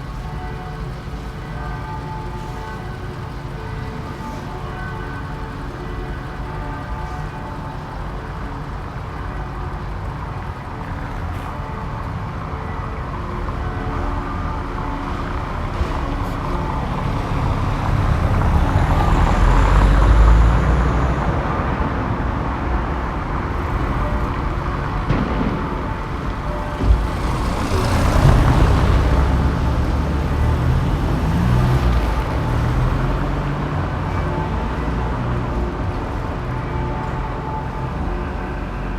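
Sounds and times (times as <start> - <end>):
street traffic rumble: 0.0 - 38.9
vehicles passing close by: 0.0 - 38.9.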